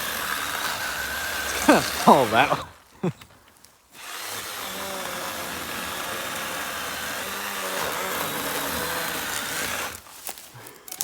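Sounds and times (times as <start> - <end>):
chainsaw cutting wood: 0.0 - 2.7, 3.9 - 10.1.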